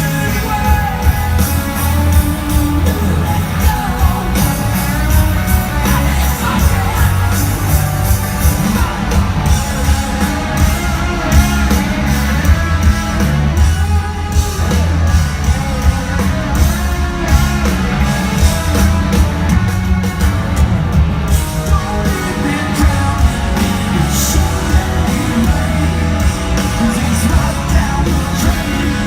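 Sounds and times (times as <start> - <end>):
lead vocal singing: 0.0 - 14.8, 21.3 - 29.0
drums: 0.0 - 29.0
electric guitars: 0.0 - 29.0.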